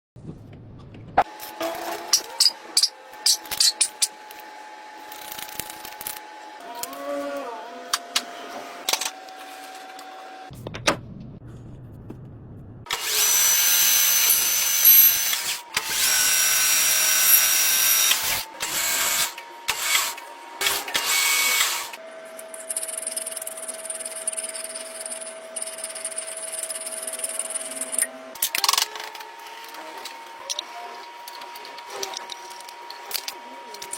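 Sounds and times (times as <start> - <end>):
machine hum with high tone: 12.7 - 33.9
lathe cutting metal: 12.9 - 22.0.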